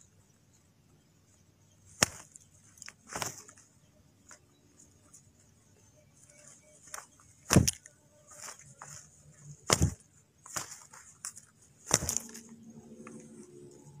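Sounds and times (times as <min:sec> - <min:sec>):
rustling: 0:01.8 - 0:05.6, 0:06.2 - 0:14.0
loud thumps: 0:07.5 - 0:07.8, 0:09.7 - 0:10.0.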